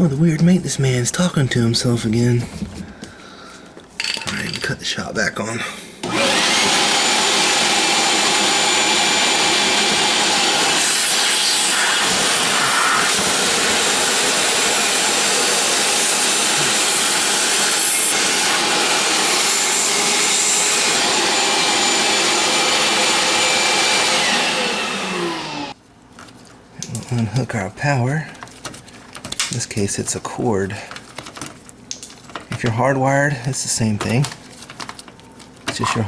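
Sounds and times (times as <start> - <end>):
shop vac whining: 6.0 - 25.8.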